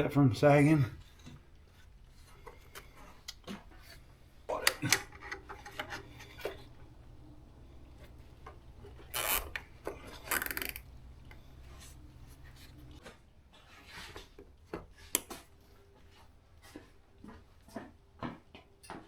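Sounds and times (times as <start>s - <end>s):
plastic parts clicking and handling: 1.0s - 13.0s
cable tie ratcheting: 2.4s - 13.0s.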